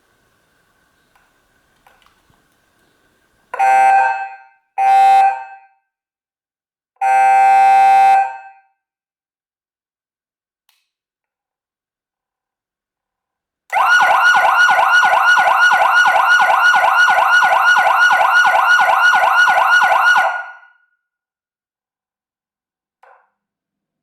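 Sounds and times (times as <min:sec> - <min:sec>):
siren horn blasts: 0:03.6 - 0:05.7, 0:07.0 - 0:08.6, 0:13.7 - 0:20.6.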